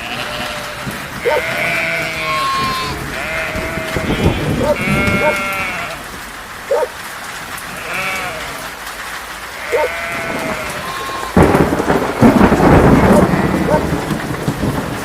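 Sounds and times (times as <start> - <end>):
livestock bleating: 0.0 - 6.0, 7.7 - 8.8, 9.6 - 11.4
rain hissing: 0.0 - 15.0.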